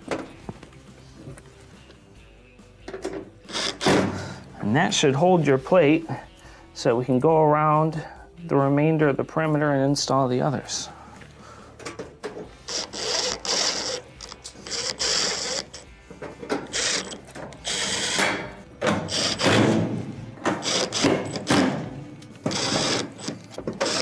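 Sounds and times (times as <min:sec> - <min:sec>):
power driver driving screws: 0:03.0 - 0:04.5, 0:11.8 - 0:24.0
metal clicking and rattling: 0:11.8 - 0:24.0.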